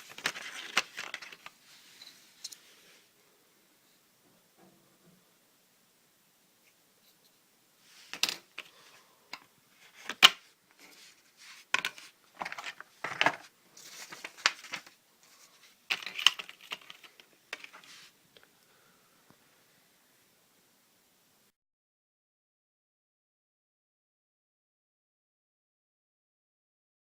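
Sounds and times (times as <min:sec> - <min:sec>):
packaging rustling: 0:00.0 - 0:02.1, 0:08.1 - 0:18.1.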